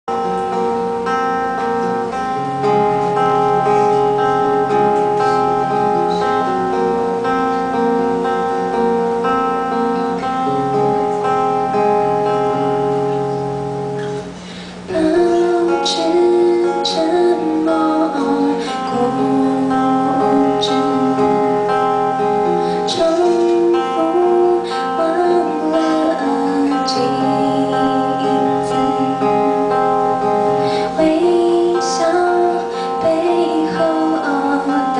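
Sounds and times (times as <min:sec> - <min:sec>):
acoustic guitar instrumental music: 0:00.0 - 0:34.9.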